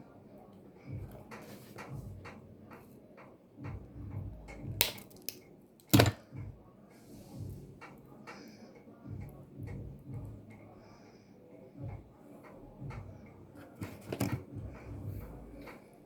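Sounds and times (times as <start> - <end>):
light clicks and handling noise: 0.5 - 3.8, 12.4 - 16.0.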